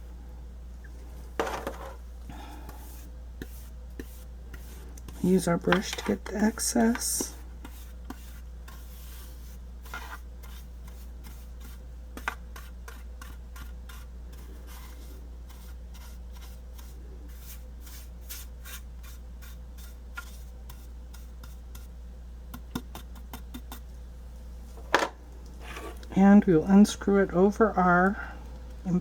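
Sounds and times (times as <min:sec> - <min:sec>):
small brush sweeping: 0:02.7 - 0:11.8, 0:12.6 - 0:21.9.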